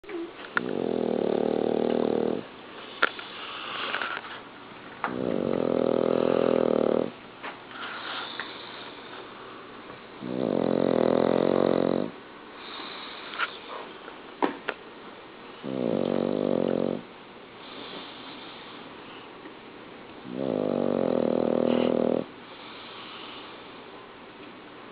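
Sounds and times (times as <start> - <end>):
pet snoring loudly: 0.6 - 2.5, 5.1 - 7.2, 10.2 - 13.2, 15.6 - 18.5, 20.2 - 23.5
soft breathing: 7.7 - 9.8, 17.6 - 19.4, 21.6 - 24.0.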